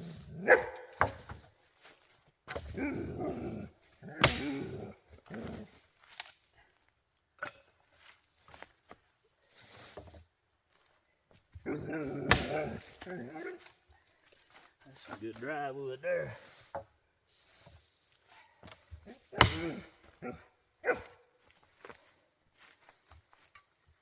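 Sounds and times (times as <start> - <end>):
dog grumbling and whining: 2.7 - 5.8, 11.6 - 13.7, 19.0 - 21.2.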